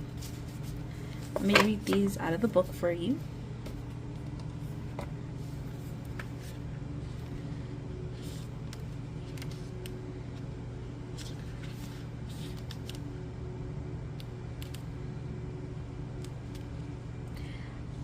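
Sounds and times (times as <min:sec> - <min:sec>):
paper pages rustling: 0:00.0 - 0:02.1, 0:05.4 - 0:07.4, 0:08.2 - 0:09.9, 0:11.1 - 0:13.1
steady low hum: 0:00.0 - 0:18.0.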